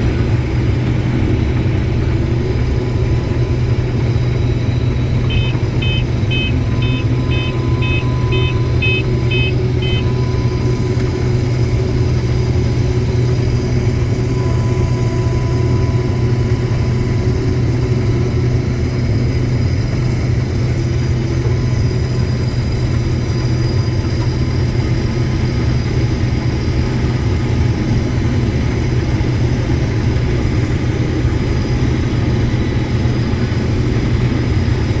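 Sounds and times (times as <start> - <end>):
farm machine engine drone: 0.0 - 35.0
quick electronic beeps: 4.9 - 10.8.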